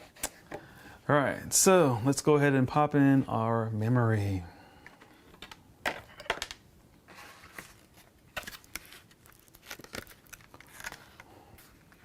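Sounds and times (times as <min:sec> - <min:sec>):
plastic packaging crinkling: 0:07.5 - 0:11.3.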